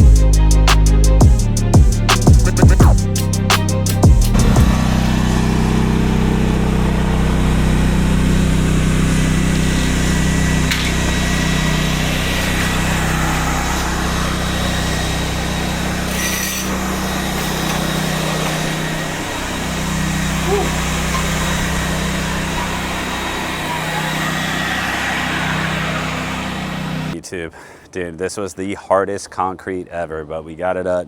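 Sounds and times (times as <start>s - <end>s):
concrete grinder grinding: 4.2s - 27.2s.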